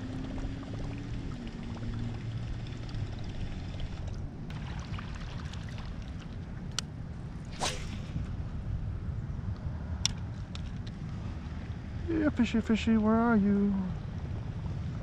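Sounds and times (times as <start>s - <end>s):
water splashing and trickling: 0.0s - 6.8s
wind noise: 0.0s - 12.2s.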